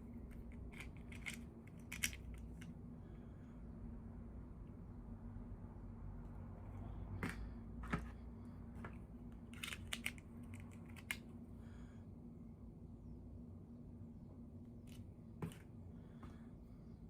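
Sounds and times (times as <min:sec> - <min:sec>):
toy packaging clicks and snaps: 0:00.4 - 0:02.7, 0:09.4 - 0:11.3.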